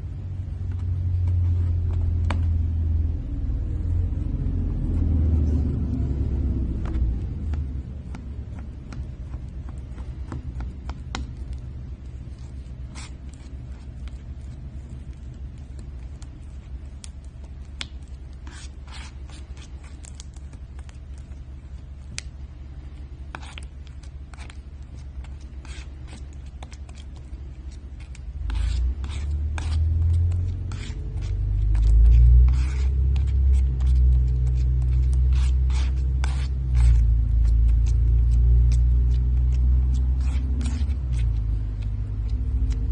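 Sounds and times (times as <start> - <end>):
low rumble: 0.0 - 8.7.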